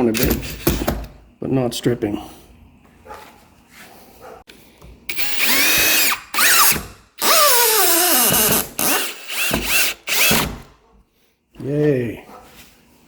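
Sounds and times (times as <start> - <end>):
power drill driving screw into wood: 0.2 - 1.1, 5.1 - 10.7.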